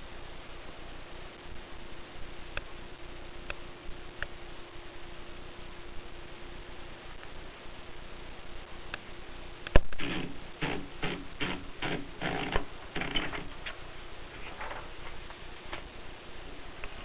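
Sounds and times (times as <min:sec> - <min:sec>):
typewriter keystrokes: 0:10.0 - 0:13.5.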